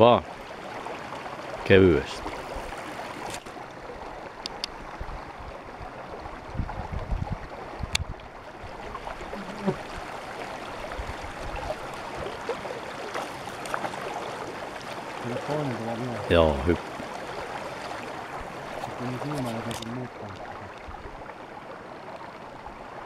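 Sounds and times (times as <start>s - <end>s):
river rushing: 8.3s - 23.0s.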